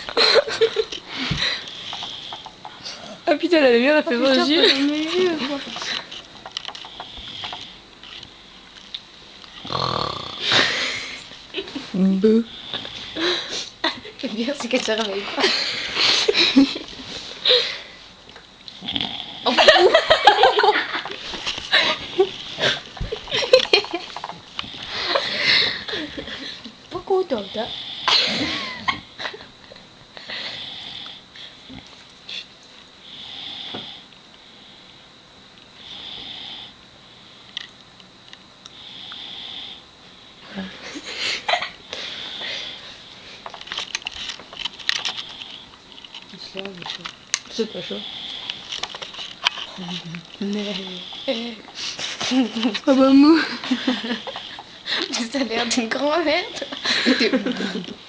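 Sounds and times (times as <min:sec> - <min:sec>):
person breathing: 0:01.1 - 0:03.2, 0:12.5 - 0:13.7, 0:30.2 - 0:31.7, 0:40.4 - 0:43.5
woman snoring: 0:09.6 - 0:11.2, 0:18.8 - 0:19.7, 0:30.2 - 0:31.2, 0:35.8 - 0:36.7, 0:50.8 - 0:51.6
nasal puffs and sniffs: 0:47.7 - 0:52.9.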